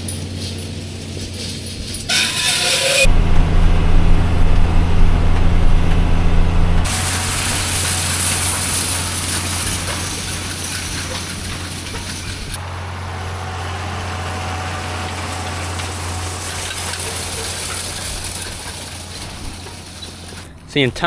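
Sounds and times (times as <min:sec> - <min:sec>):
tractor engine running: 0:00.0 - 0:02.1, 0:03.0 - 0:20.8.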